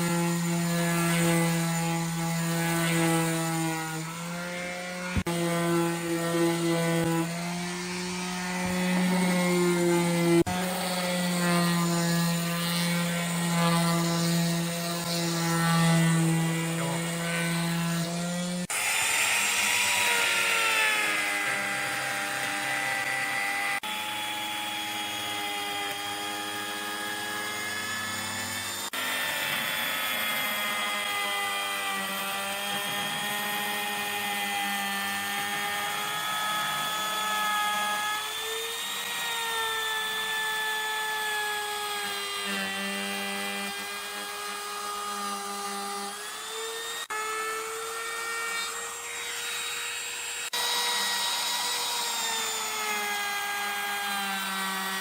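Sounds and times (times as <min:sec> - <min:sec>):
power tool motor whine: 0:00.0 - 0:55.0.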